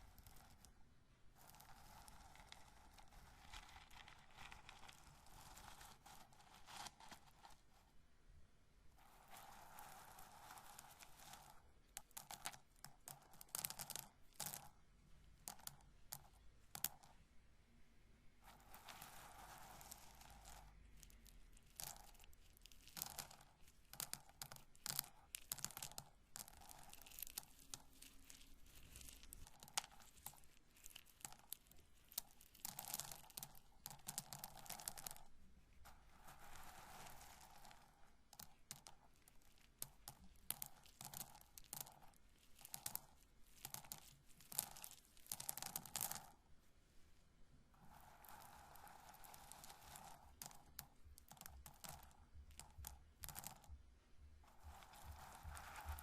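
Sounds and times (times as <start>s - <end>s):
corn kernels crackling in hands: 2.0s - 7.6s, 18.5s - 35.3s, 35.9s - 46.4s, 47.8s - 53.6s, 54.5s - 56.0s.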